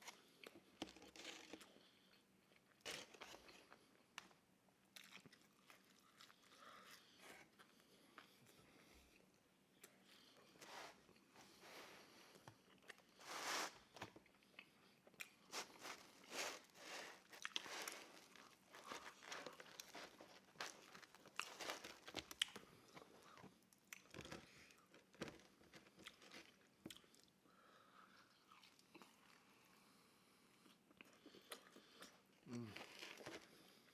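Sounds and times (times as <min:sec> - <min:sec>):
biting and chewing pizza: 0:00.0 - 0:04.2, 0:13.8 - 0:27.4, 0:30.7 - 0:33.9.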